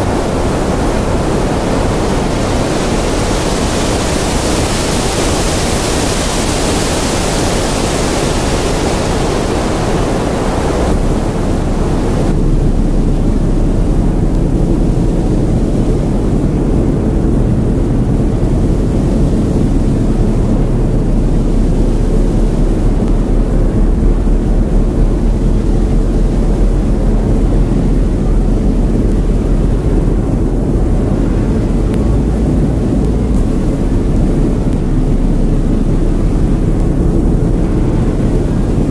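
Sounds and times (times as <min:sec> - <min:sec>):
hiss: 0:00.0 - 0:12.4
low rumble: 0:00.0 - 0:38.9.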